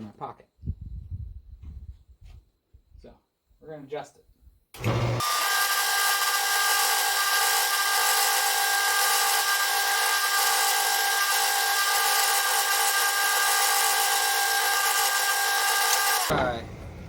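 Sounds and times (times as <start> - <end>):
power grinder whining: 4.8 - 16.4.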